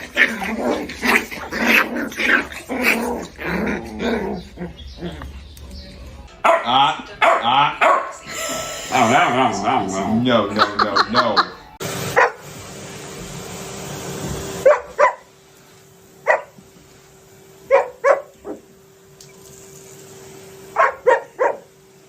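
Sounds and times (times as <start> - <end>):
dog barking: 6.4 - 8.2, 12.2 - 12.4, 14.6 - 15.3, 16.2 - 16.6, 17.7 - 18.7, 20.8 - 21.7.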